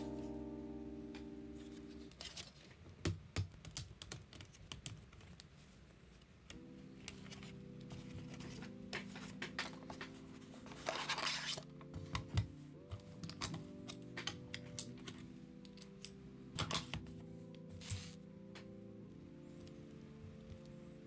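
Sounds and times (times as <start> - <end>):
soft background music: 0.0 - 2.9, 5.6 - 21.0
keyboard plastic clicks: 3.0 - 5.5, 11.8 - 18.0.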